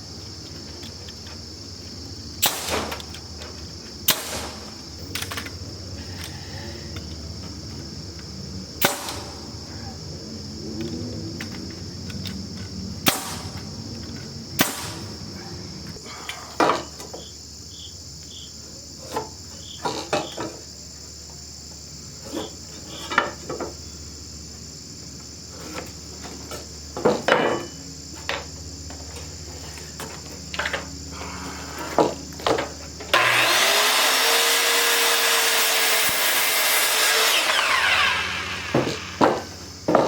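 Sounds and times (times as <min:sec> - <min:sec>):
insects droning: 0:00.0 - 0:40.0
boards clattering: 0:25.6 - 0:29.0, 0:31.8 - 0:40.0.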